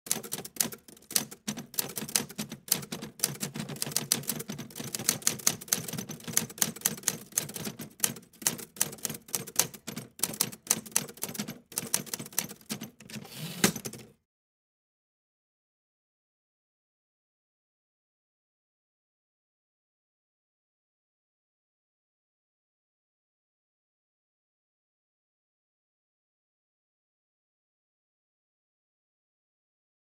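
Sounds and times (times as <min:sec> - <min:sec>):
typewriter key strikes: 0:00.1 - 0:14.1.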